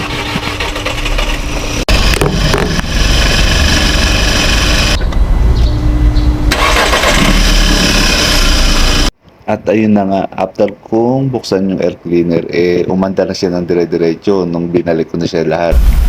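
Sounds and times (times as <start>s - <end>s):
car engine starting and running: 0.0s - 9.1s.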